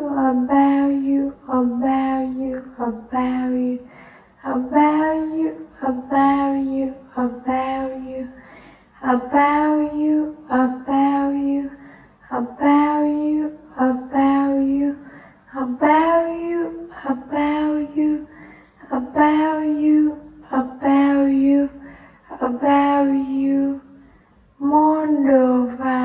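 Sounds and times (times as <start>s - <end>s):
person singing a repeated phrase: 0.0s - 3.8s, 4.5s - 8.4s, 9.0s - 11.7s, 12.3s - 15.0s, 15.6s - 18.3s, 22.3s - 23.8s, 24.6s - 26.0s.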